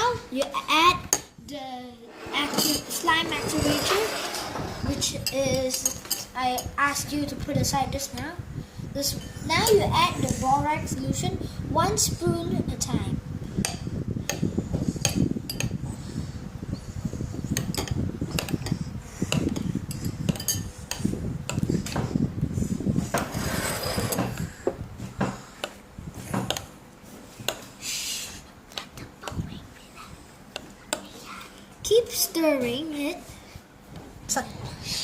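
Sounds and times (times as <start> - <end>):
spoon stirring slime in bowl: 17.6 - 21.7.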